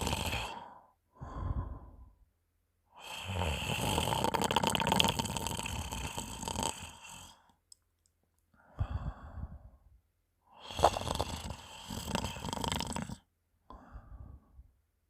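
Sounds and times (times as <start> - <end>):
person snoring with wet rattle: 0.0 - 0.8, 3.0 - 7.5, 10.6 - 13.3.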